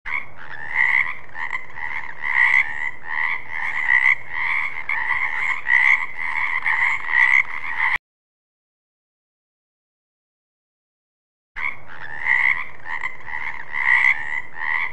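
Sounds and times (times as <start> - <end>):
frogs croaking: 0.1 - 8.0, 11.6 - 14.9.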